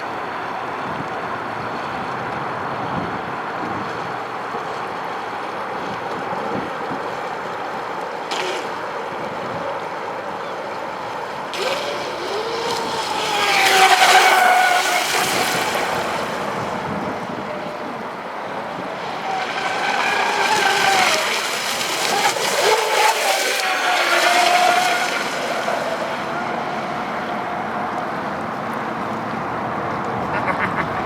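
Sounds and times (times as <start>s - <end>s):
electric boat motor whine: 0.0s - 29.8s
water and wind hiss: 0.0s - 30.2s.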